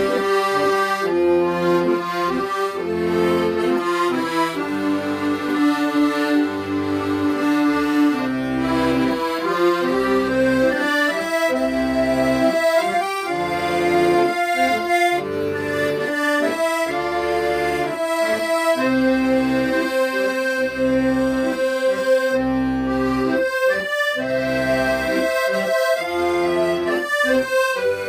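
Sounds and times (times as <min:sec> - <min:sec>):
accordion playing melody: 0:00.0 - 0:28.0.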